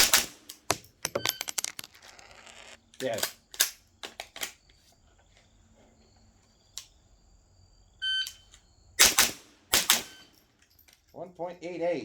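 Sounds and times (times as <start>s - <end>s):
rapid rifle shots: 0.0s - 0.5s, 9.0s - 10.1s.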